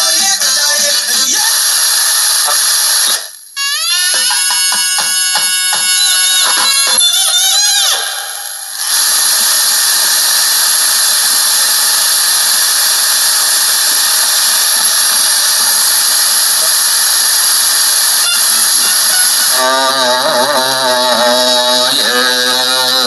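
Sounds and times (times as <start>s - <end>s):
radio static hiss: 0.0s - 23.0s.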